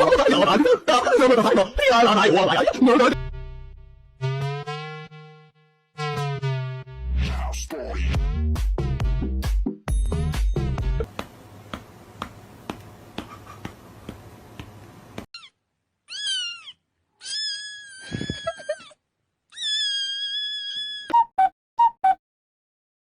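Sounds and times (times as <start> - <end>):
cat meowing: 15.4 - 18.9, 19.5 - 21.1.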